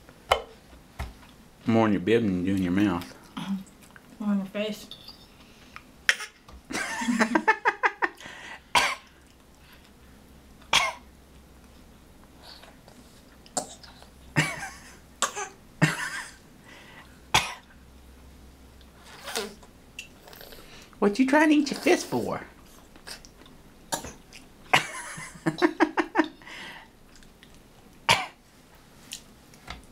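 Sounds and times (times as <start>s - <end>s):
baby coughing: 6.1s - 6.4s, 8.8s - 9.1s, 10.7s - 11.1s, 15.2s - 16.4s, 17.4s - 17.6s, 23.9s - 24.8s, 28.1s - 28.4s.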